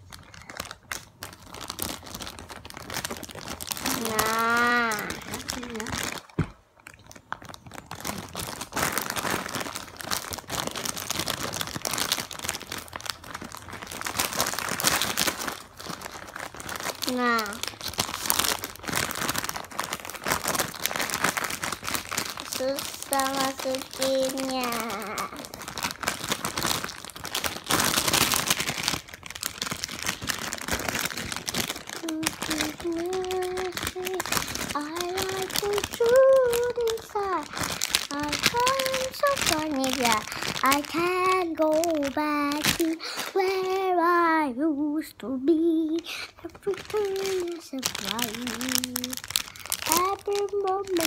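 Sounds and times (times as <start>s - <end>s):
plastic packaging crinkling: 0.0s - 51.0s.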